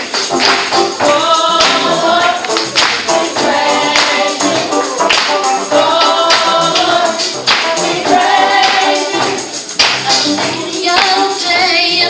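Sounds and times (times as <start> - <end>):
youth choir singing gospel: 0.0 - 12.0
tambourine: 3.1 - 11.8.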